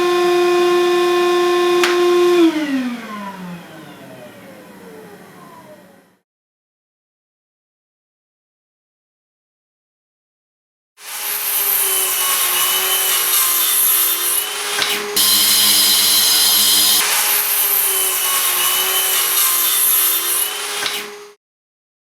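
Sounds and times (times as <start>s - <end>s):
vacuum cleaner click: 0.0s - 5.9s, 14.6s - 17.3s, 20.6s - 21.3s
vacuum cleaner running: 0.0s - 6.2s, 11.0s - 21.4s.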